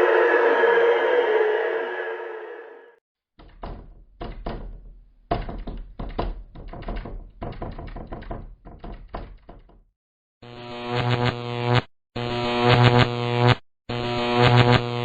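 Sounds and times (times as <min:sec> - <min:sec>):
knocking: 0:03.4 - 0:09.9.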